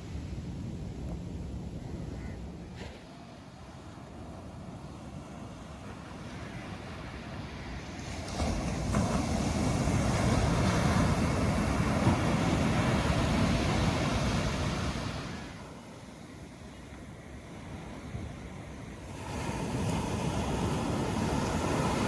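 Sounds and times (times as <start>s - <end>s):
wave breaking on beach: 6.4s - 16.1s, 18.9s - 22.0s.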